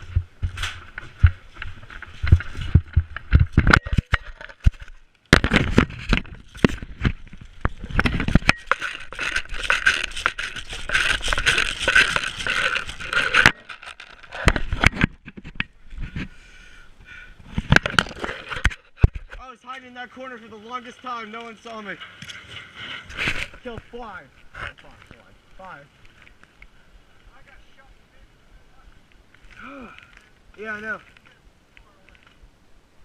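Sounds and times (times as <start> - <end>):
gear rubbing against camera: 0.0 - 16.3, 22.0 - 25.2.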